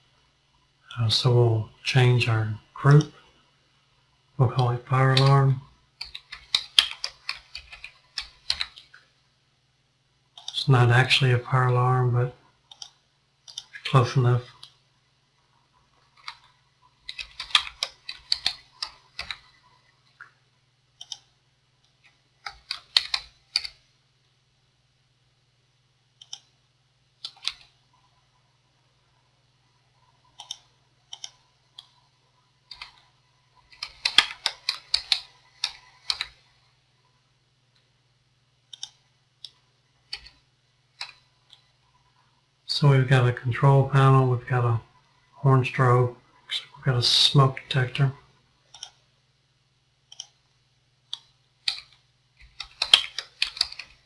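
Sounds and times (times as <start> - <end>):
faint low hum: 0.0 - 54.0
computer keyboard typing: 6.0 - 8.9, 16.2 - 19.5, 21.0 - 21.3, 22.4 - 23.8, 27.2 - 27.7, 30.3 - 32.0, 32.7 - 33.0, 33.7 - 36.4, 38.7 - 40.4, 51.1 - 54.0.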